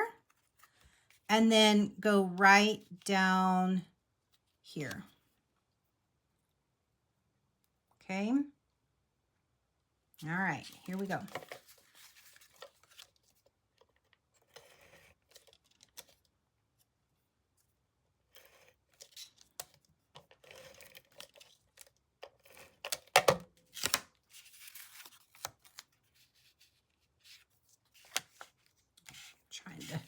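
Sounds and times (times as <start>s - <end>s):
paper scraping and rustling: 10.6s - 13.5s.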